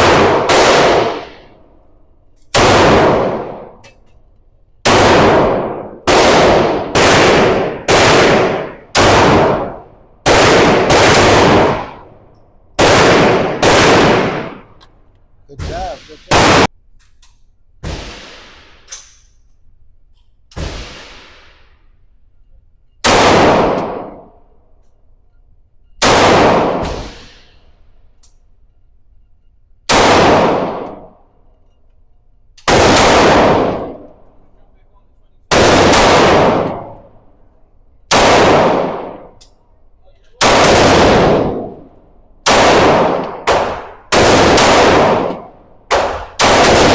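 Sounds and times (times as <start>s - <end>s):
gunshots ringing: 0.0s - 1.6s, 2.5s - 4.0s, 4.8s - 12.2s, 12.8s - 14.8s, 15.5s - 16.7s, 17.8s - 18.9s, 20.6s - 21.8s, 23.0s - 24.5s, 26.0s - 27.7s, 29.9s - 31.3s, 32.6s - 34.5s, 35.5s - 37.4s, 38.1s - 39.4s, 40.3s - 46.9s
fainter gunshot: 15.5s - 16.7s, 17.8s - 18.9s, 20.6s - 21.8s, 26.0s - 27.6s, 35.5s - 37.1s.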